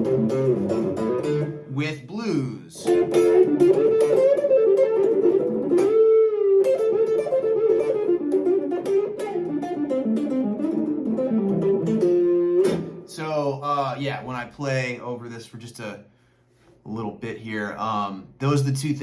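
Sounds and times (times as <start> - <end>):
electric guitar lead line: 0.0 - 1.7, 2.8 - 13.2.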